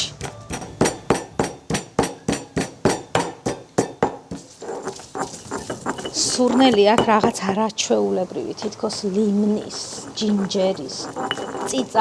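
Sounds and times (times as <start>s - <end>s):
pestle pounding in mortar: 0.0s - 7.6s.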